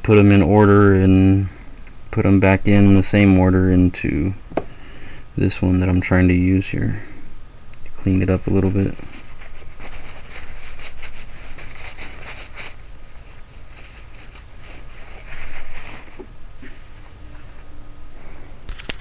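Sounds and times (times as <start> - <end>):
rustling while handling parts: 8.1 - 19.0.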